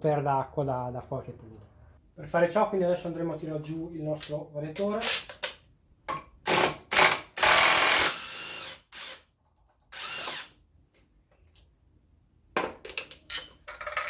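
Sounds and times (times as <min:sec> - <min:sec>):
impact wrench bursts: 0:06.5 - 0:09.2.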